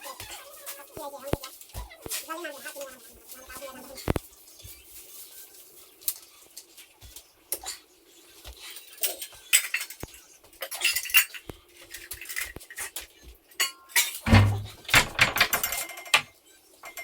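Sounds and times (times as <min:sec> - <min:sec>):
utensils and dishes clinking: 0:08.6 - 0:11.4, 0:13.6 - 0:17.0
heavy thump: 0:14.3 - 0:15.5.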